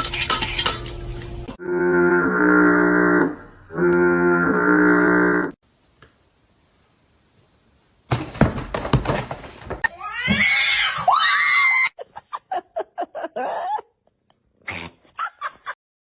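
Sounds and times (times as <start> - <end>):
clattering and scuffling: 8.1 - 10.6.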